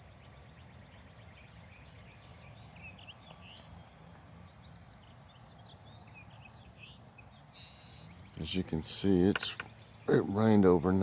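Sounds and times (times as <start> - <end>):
distant songbirds chirping: 0.0 - 11.0.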